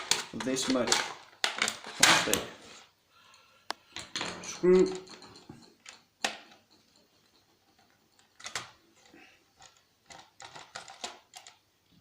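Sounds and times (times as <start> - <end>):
small parts clicking and tapping: 3.3 - 12.0.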